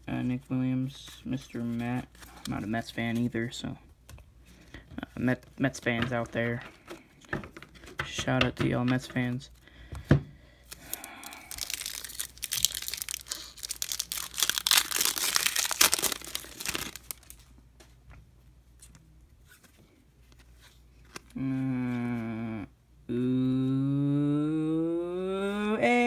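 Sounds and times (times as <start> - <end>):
foil wrapper tearing and crinkling: 10.7 - 17.5
person humming: 21.3 - 26.0.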